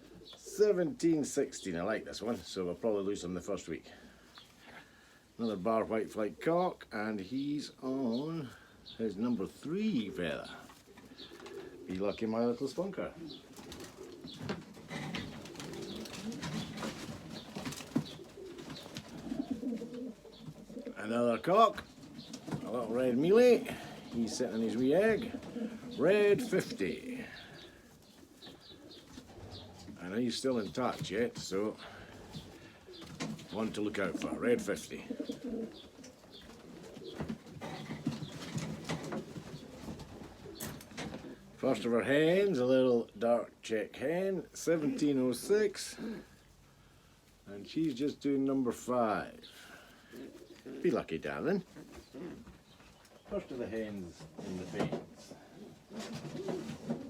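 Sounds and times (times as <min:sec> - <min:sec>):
pigeons cooing: 0:00.0 - 0:02.4, 0:03.0 - 0:41.6, 0:45.8 - 0:47.2, 0:49.2 - 0:57.0
clicks and rustles of birds handled: 0:10.4 - 0:21.0, 0:21.8 - 0:23.0, 0:23.6 - 0:41.5, 0:49.8 - 0:50.8, 0:51.6 - 0:57.0.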